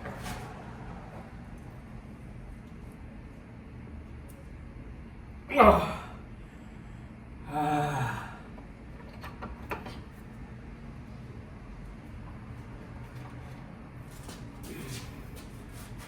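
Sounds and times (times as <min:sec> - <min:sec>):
man grunting with effort: 0:05.5 - 0:06.2, 0:07.4 - 0:08.5.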